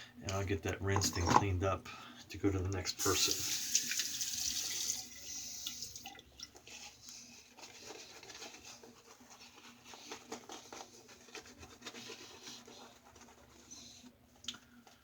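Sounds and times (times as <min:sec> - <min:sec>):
faint rubbing: 0:06.7 - 0:14.1.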